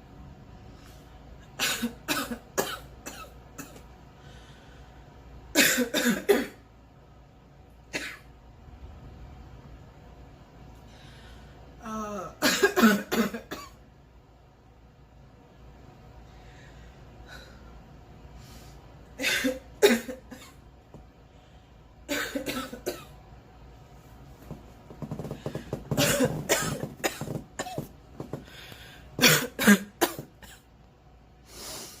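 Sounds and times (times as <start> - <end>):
woman coughing: 1.6 - 3.8, 5.6 - 6.6, 8.0 - 8.3, 12.2 - 13.8, 19.2 - 20.6, 22.1 - 23.2, 25.9 - 27.9, 29.2 - 30.7.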